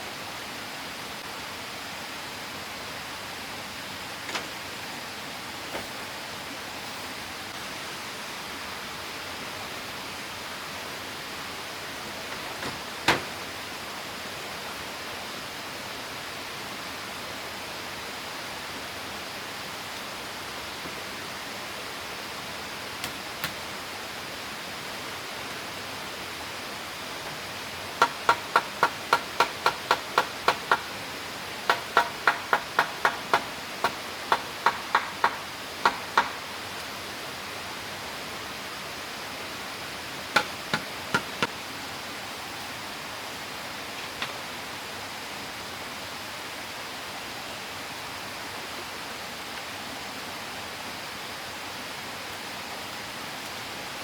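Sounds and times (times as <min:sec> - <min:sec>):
rushing water: 0:00.0 - 0:54.0
hand tool knocking: 0:28.0 - 0:30.9, 0:31.7 - 0:36.4, 0:40.4 - 0:41.5.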